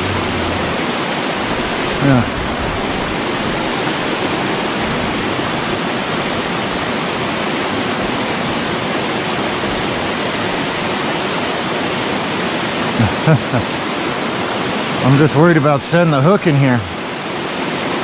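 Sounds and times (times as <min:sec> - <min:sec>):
creek water flowing: 0:00.0 - 0:15.8.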